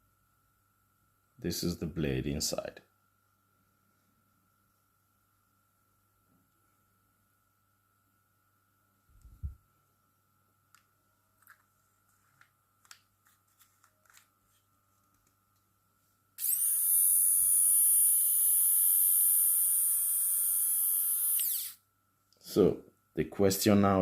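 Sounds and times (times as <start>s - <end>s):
electric shaver buzzing: 16.4s - 21.8s.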